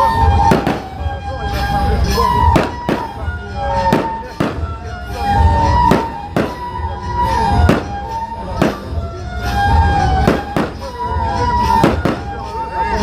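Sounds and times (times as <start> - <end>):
music with held notes: 0.0 - 13.0
firework shells bursting: 0.4 - 1.1, 2.3 - 5.2, 5.8 - 6.8, 7.6 - 9.6, 10.2 - 12.6.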